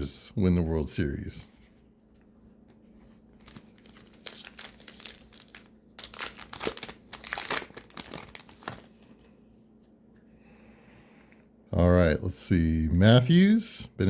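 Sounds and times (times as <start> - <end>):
wrapper tearing and crinkling: 3.4 - 9.0.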